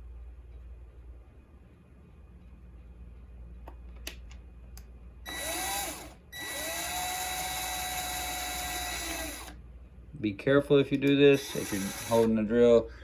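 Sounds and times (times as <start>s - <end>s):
power drill boring: 5.3s - 9.6s, 11.4s - 12.3s.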